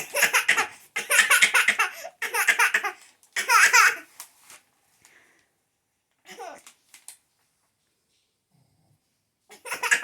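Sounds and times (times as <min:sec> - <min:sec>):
child laughing: 0:09.5 - 0:10.0.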